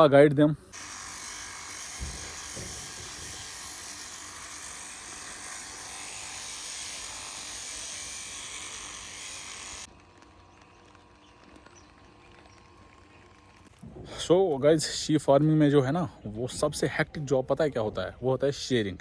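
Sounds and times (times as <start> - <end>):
electric clippers buzzing: 0.7 - 13.8.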